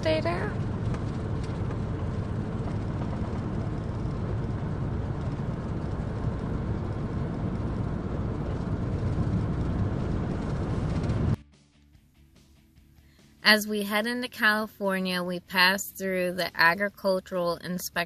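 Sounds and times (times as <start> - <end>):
van road and wind rumble: 0.0 - 11.4.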